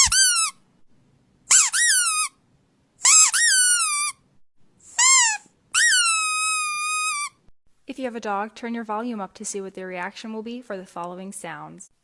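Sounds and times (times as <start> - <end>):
squeaky dog toy squeaks: 0.0 - 0.6, 1.5 - 2.4, 3.0 - 4.2, 4.8 - 7.5.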